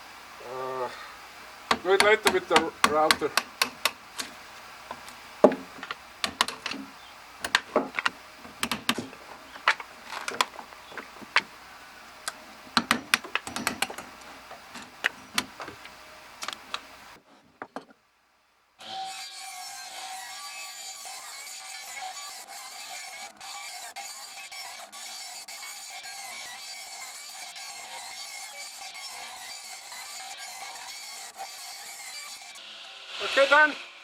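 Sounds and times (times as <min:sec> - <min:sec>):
hammer striking a chisel: 0:01.7 - 0:04.0, 0:05.4 - 0:11.5, 0:12.8 - 0:14.2.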